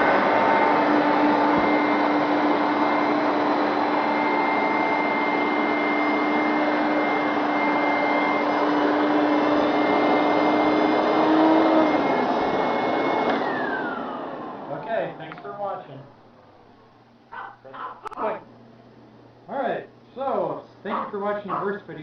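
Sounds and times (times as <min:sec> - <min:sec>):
carpet cleaner suction motor whine: 0:00.0 - 0:15.8.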